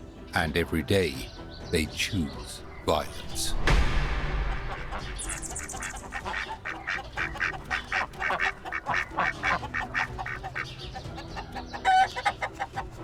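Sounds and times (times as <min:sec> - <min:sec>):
ducks quacking: 0:04.5 - 0:13.0.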